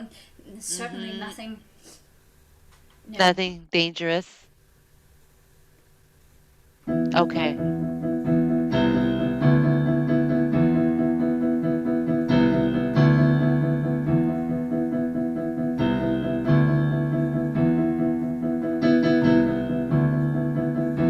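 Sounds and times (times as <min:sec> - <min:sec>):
held piano chords: 0:06.8 - 0:21.0.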